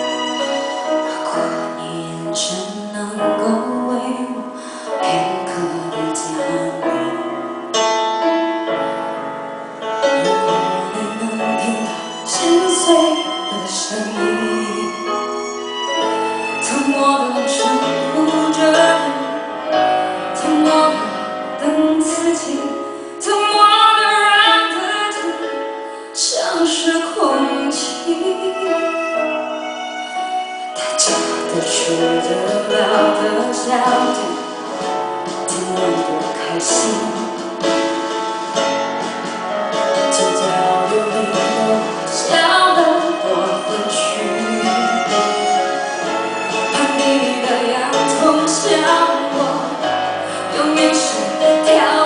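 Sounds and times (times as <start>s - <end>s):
piano: 0.0s - 52.0s
woman singing: 1.1s - 7.3s, 10.1s - 15.2s, 16.6s - 19.5s, 20.4s - 29.3s, 30.8s - 37.9s, 40.0s - 45.5s, 46.6s - 52.0s.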